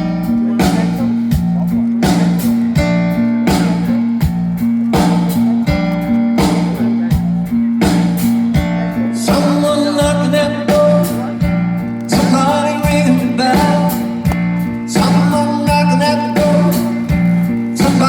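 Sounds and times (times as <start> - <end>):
live rock band playing: 0.0 - 18.0
person singing: 8.6 - 18.0.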